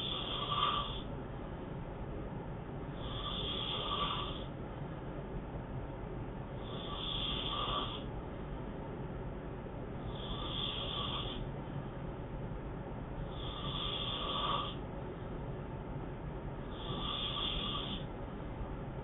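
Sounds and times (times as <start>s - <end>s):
man snoring: 0.0s - 1.1s, 3.0s - 4.5s, 6.6s - 8.1s, 10.0s - 11.4s, 13.3s - 14.8s, 16.7s - 18.1s.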